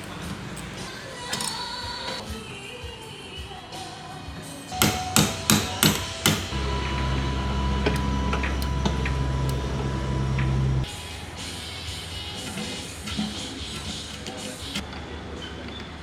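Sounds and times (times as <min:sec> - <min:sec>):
hammer strikes: 0:04.7 - 0:10.9
low mechanical hum: 0:04.8 - 0:11.3.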